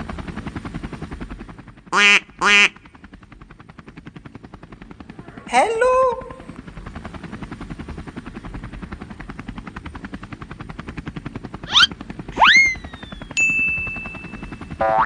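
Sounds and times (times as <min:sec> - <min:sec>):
cartoon helicopter rotor chopping: 0:00.0 - 0:15.0
sliding swoop effect: 0:11.7 - 0:13.1
rising zip effect: 0:11.7 - 0:14.2
high ding: 0:13.4 - 0:15.0.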